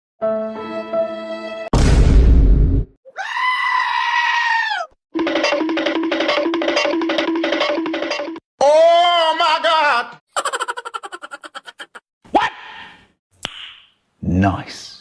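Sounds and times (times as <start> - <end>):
long bleating scream: 3.1 - 5.0
rhythmic music: 5.2 - 8.4.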